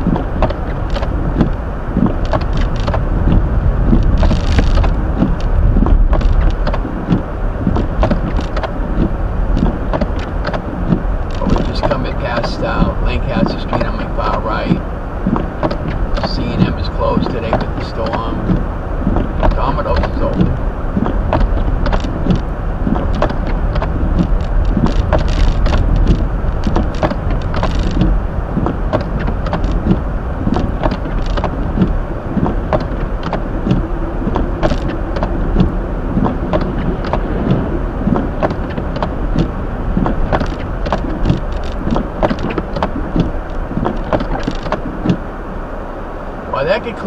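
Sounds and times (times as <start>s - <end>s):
tyre and engine road noise: 0.0s - 47.0s
small irregular clicks and knocks: 0.1s - 45.2s.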